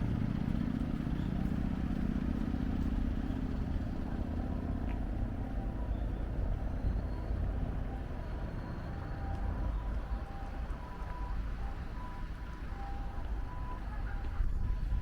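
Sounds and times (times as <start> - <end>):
road traffic rumble: 0.0 - 15.0.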